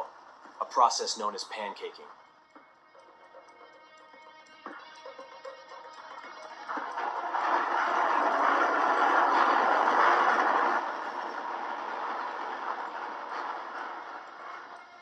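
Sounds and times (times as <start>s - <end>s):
building collapsing with rumbling roar: 6.7s - 15.0s.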